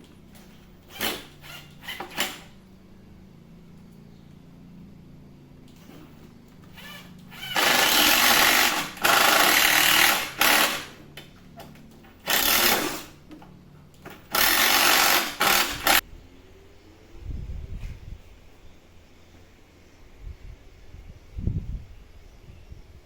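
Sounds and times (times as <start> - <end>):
handheld power tool bursts: 6.7 - 11.0, 12.2 - 13.2, 14.2 - 16.0.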